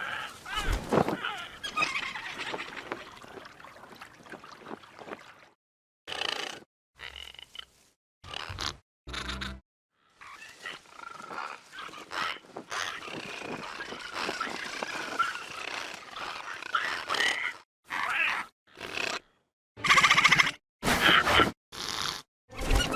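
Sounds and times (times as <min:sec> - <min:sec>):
raspy creature calls: 0:10.2 - 0:21.4.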